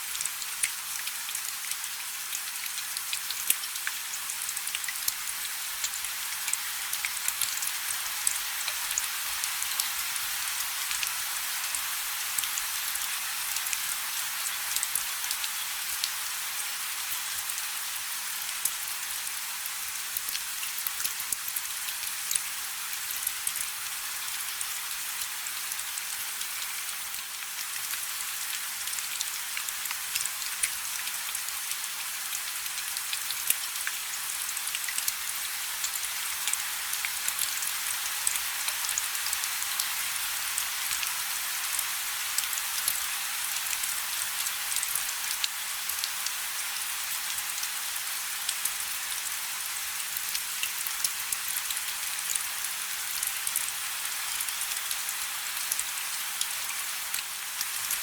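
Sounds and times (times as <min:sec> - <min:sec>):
steady rain hiss: 0:32.2 - 0:58.0.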